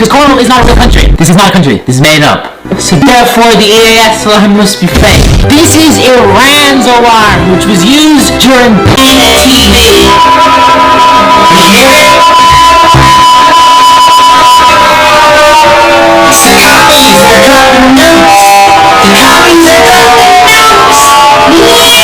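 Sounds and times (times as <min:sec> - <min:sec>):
steady high tone: 0:09.2 - 0:22.0
loud plucked string music: 0:10.1 - 0:15.6.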